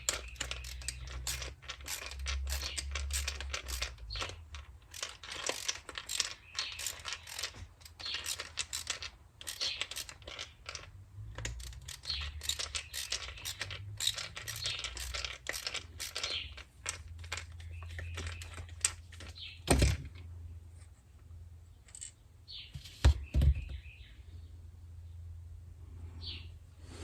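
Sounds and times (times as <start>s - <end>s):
metal tools clicking and rattling: 0.0s - 19.4s.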